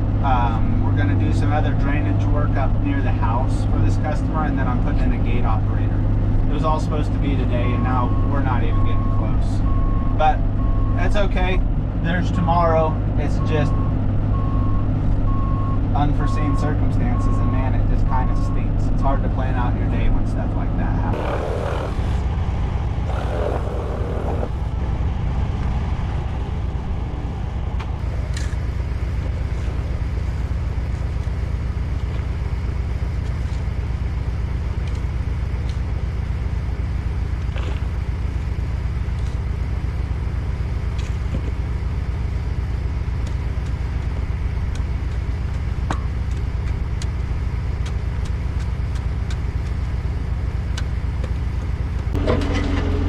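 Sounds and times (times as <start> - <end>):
engine droning: 0.0 - 53.0.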